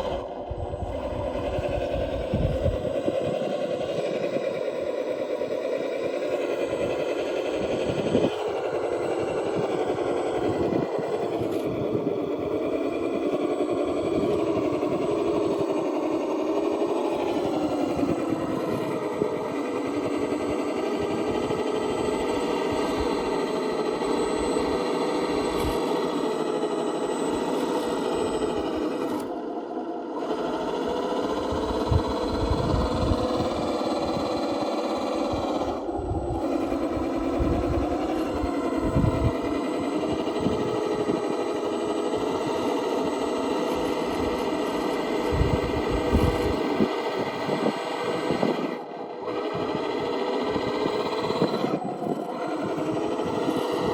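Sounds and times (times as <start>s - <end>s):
small electric motor whining: 0.0s - 53.9s.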